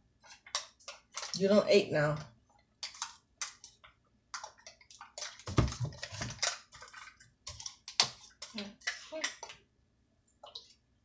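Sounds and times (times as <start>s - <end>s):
food and dishes being handled: 2.8s - 9.6s.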